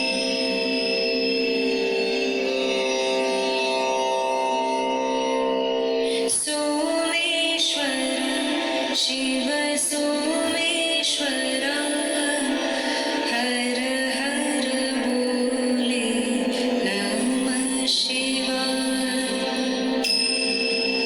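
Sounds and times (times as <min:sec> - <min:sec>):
person singing a melody: 0:06.1 - 0:20.1.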